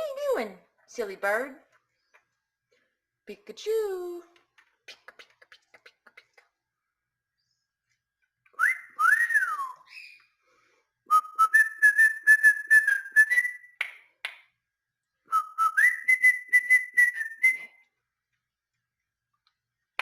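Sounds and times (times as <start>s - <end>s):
pet bird whistling: 8.6s - 10.3s.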